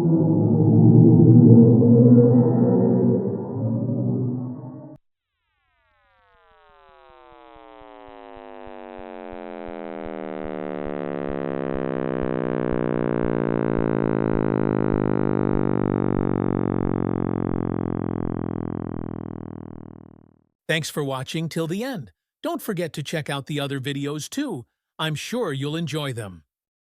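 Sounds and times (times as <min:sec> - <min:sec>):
eerie synthetic drone: 0:00.0 - 0:05.0, 0:08.9 - 0:20.3.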